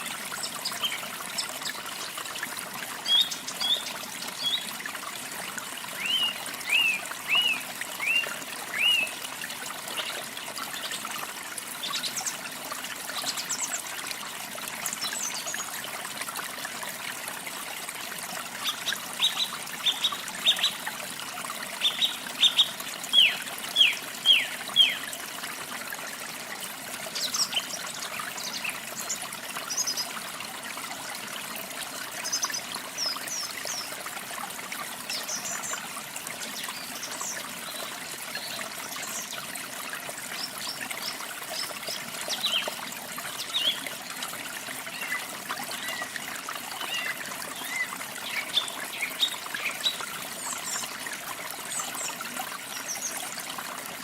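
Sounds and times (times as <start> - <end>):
trickle of running water: 0.0 - 54.0.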